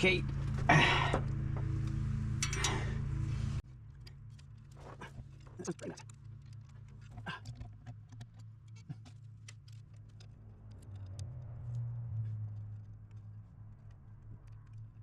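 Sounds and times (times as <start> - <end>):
steady low hum: 0.0 - 9.0.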